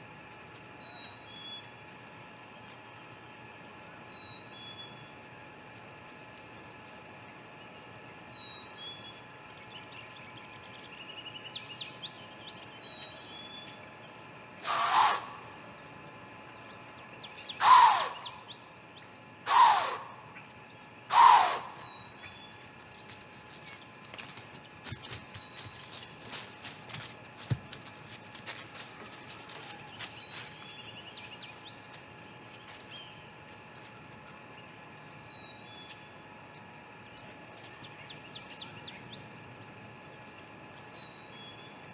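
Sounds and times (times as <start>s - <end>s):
small birds chirping: 4.0s - 41.9s
owl hissing: 14.6s - 15.5s, 17.6s - 18.4s, 19.5s - 20.2s, 21.1s - 21.9s.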